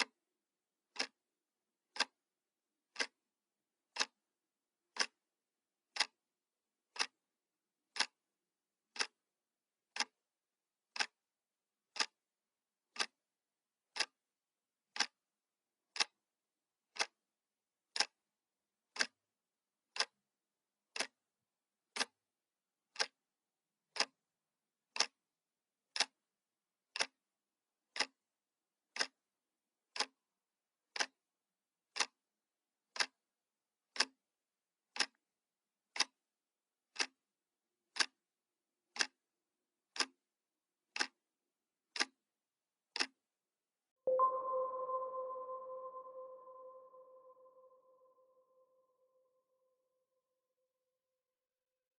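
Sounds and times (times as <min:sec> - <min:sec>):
clock ticking: 0:00.9 - 0:01.2, 0:01.8 - 0:02.2, 0:02.9 - 0:03.2, 0:03.8 - 0:05.3, 0:05.9 - 0:06.2, 0:06.8 - 0:07.2, 0:07.9 - 0:09.3, 0:09.9 - 0:10.3, 0:10.9 - 0:11.2, 0:11.9 - 0:12.2, 0:12.9 - 0:13.2, 0:13.8 - 0:14.2, 0:14.9 - 0:15.3, 0:15.9 - 0:16.2, 0:16.8 - 0:17.2, 0:17.9 - 0:19.2, 0:19.9 - 0:20.2, 0:20.8 - 0:21.3, 0:21.9 - 0:22.2, 0:22.9 - 0:23.2, 0:23.9 - 0:24.3, 0:24.9 - 0:25.2, 0:25.9 - 0:26.3, 0:26.9 - 0:27.2, 0:27.9 - 0:28.3, 0:28.9 - 0:29.3, 0:29.9 - 0:30.2, 0:30.9 - 0:31.2, 0:31.9 - 0:32.3, 0:32.9 - 0:33.3, 0:33.9 - 0:34.3, 0:34.9 - 0:35.2, 0:35.9 - 0:36.2, 0:36.9 - 0:37.2, 0:37.9 - 0:38.3, 0:38.9 - 0:39.3, 0:39.9 - 0:40.3, 0:40.9 - 0:41.3, 0:41.9 - 0:42.3, 0:42.9 - 0:43.2.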